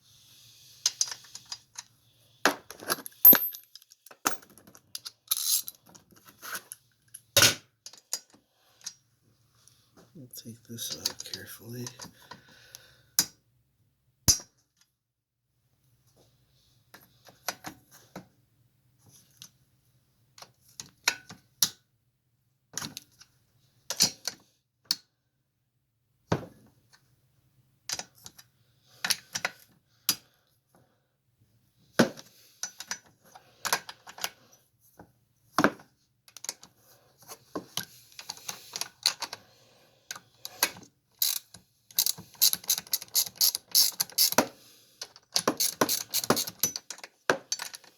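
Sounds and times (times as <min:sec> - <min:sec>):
metal parts clinking: 0:02.8 - 0:05.8, 0:41.2 - 0:44.4, 0:45.4 - 0:47.8
hand tools clicking: 0:42.0 - 0:44.5, 0:45.4 - 0:46.8.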